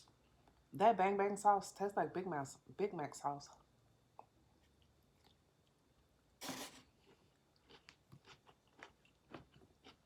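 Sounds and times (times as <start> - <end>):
soft chewing clicks: 4.2 - 5.8, 7.0 - 10.0
food crunch: 6.4 - 10.0.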